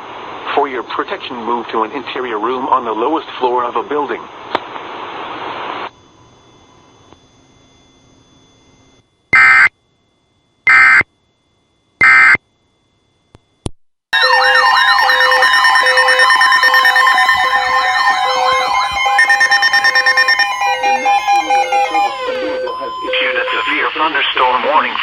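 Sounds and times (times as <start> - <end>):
alert signal with siren sweeps: 14.2 - 24.9
pulsing beep: 14.2 - 24.9
data tone bursts: 14.2 - 25.0.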